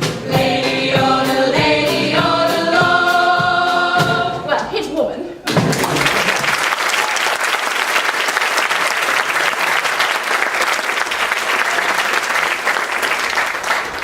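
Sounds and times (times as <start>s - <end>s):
audience applauding: 5.5s - 14.0s.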